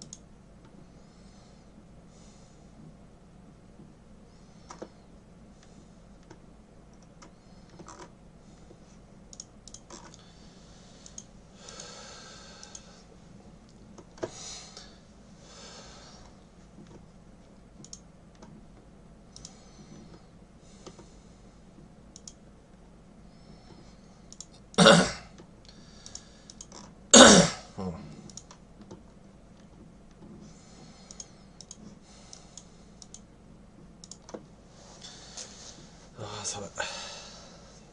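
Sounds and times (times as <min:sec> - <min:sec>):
keyboard and mouse clicks: 0:00.0 - 0:00.8, 0:06.2 - 0:08.1, 0:09.3 - 0:10.2, 0:11.0 - 0:11.9, 0:17.8 - 0:20.2, 0:22.1 - 0:22.4, 0:24.3 - 0:24.7, 0:25.4 - 0:27.0, 0:28.2 - 0:30.4, 0:31.0 - 0:33.3, 0:34.0 - 0:34.5
person coughing: 0:24.8 - 0:25.3, 0:27.1 - 0:27.9.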